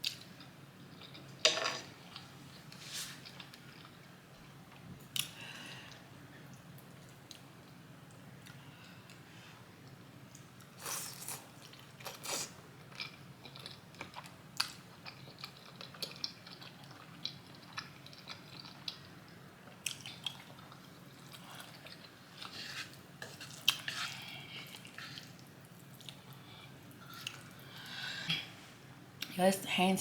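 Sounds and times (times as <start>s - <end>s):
wet smacking and chewing: 9.8s - 22.5s, 23.3s - 28.0s.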